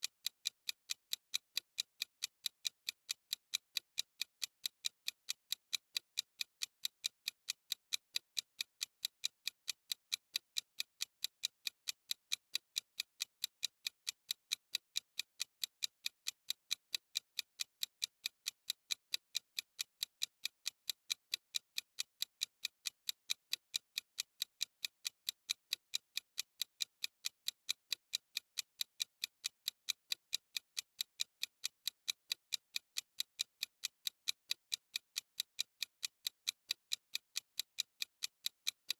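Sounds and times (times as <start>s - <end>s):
timer ticking: 0.0s - 38.9s.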